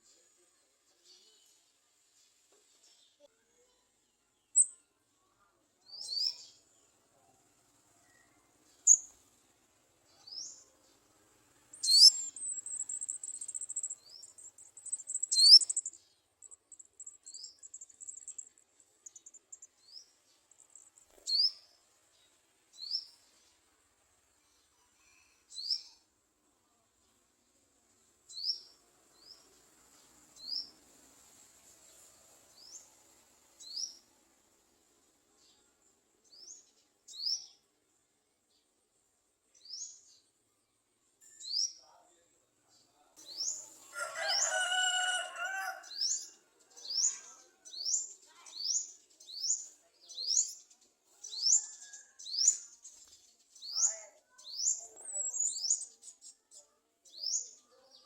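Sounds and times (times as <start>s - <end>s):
bird chirping: 4.3s - 4.9s, 5.8s - 7.3s, 7.9s - 9.3s, 10.0s - 23.6s, 42.7s - 58.0s.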